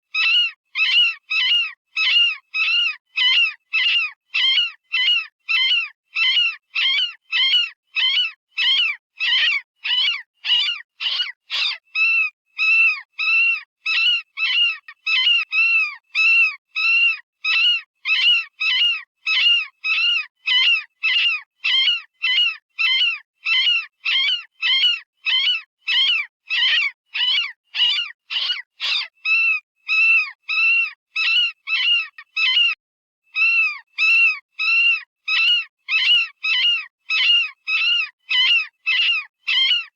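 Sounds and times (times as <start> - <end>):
synthetic rabbit distress squeals: 33.4 - 39.9.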